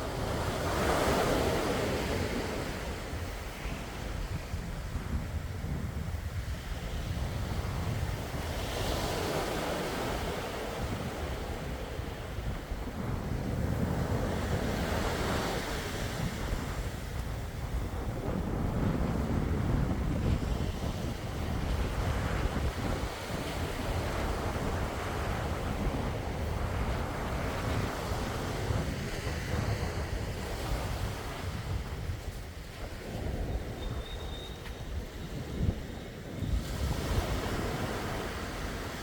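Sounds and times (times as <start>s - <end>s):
wind rumbling on microphone: 0.0s - 39.0s
sea waves washing in: 7.1s - 33.8s.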